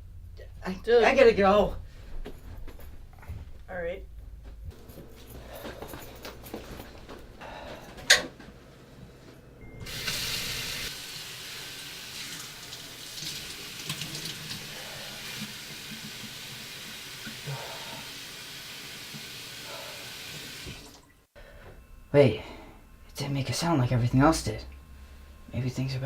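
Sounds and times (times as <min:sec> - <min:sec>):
tap water running: 0:09.8 - 0:21.2.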